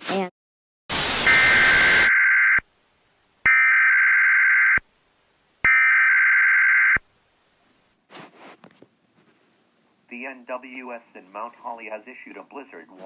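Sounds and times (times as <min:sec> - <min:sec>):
static hiss: 0:00.9 - 0:02.1.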